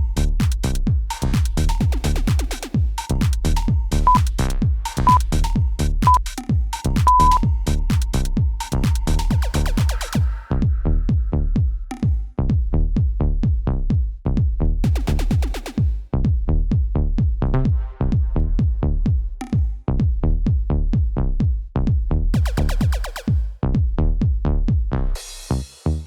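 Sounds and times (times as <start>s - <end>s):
electronic dance music: 5.0s - 5.2s, 7.1s - 7.4s.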